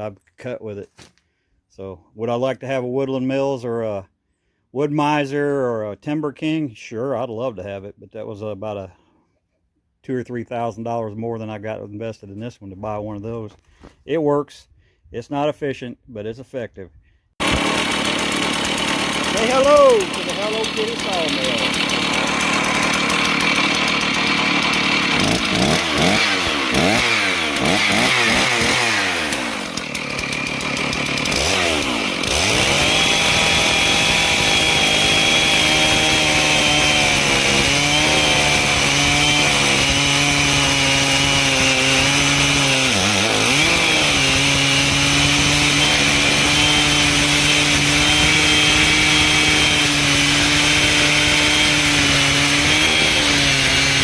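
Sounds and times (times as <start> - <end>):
chainsaw revving and cutting log: 17.4 - 54.0.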